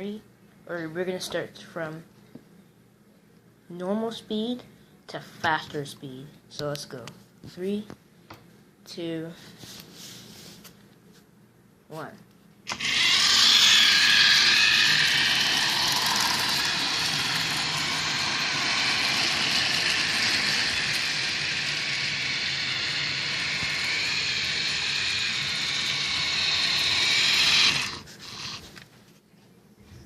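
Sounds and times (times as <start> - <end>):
model train whirring on track: 12.7 - 28.7.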